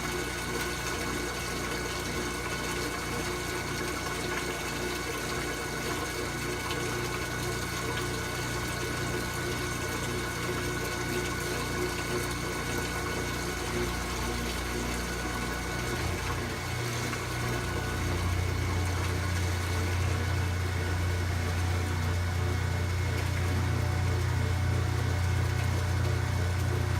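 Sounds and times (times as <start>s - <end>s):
washing machine drain pump: 0.0s - 26.9s.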